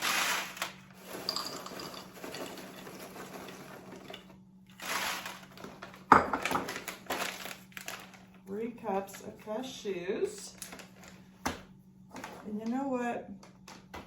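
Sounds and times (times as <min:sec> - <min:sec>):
nuts rattling into a cup: 0:00.0 - 0:04.2.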